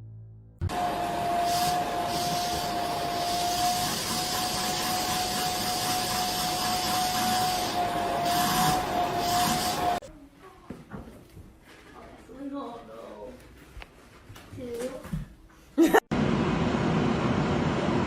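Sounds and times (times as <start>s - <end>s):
appliance motor whine: 0.6s - 10.0s.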